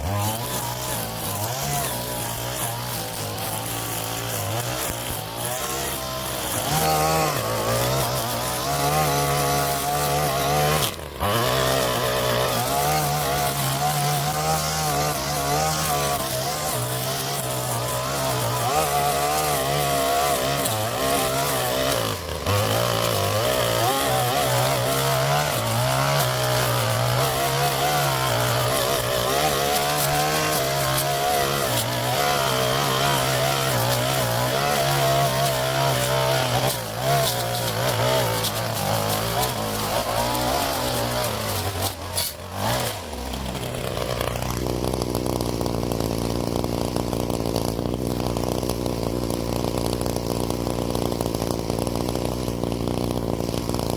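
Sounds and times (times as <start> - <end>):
string trimmer engine running: 0.0 - 53.9.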